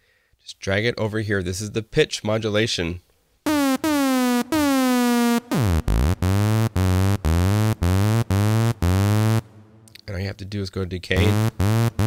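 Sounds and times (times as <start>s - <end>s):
falling synth pitch sweep: 3.5s - 9.8s, 11.2s - 12.0s
synthesizer lead notes: 3.5s - 9.9s, 11.2s - 12.0s.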